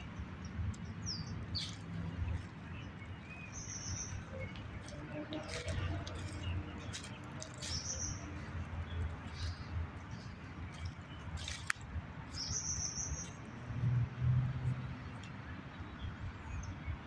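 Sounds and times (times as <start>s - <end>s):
bird chirping: 0.0s - 13.5s.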